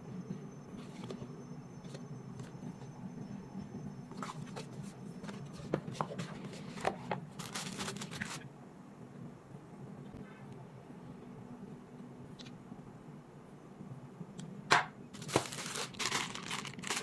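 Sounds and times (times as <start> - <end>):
packaging rustling and crinkling: 7.3 - 8.4, 15.2 - 17.0.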